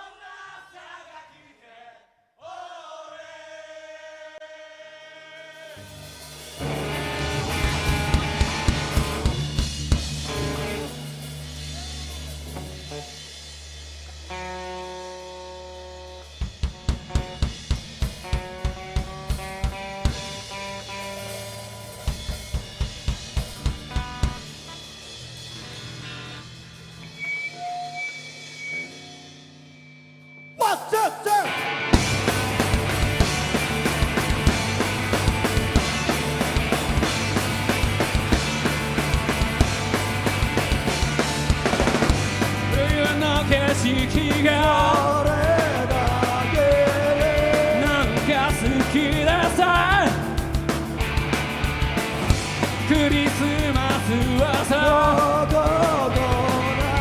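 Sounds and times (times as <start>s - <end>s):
hard drum strokes: 5.7s - 14.4s, 16.1s - 27.3s, 30.6s - 57.0s
bass guitar: 5.8s - 27.4s, 31.5s - 57.0s
sustained guitar chords: 6.6s - 11.8s, 31.4s - 57.0s.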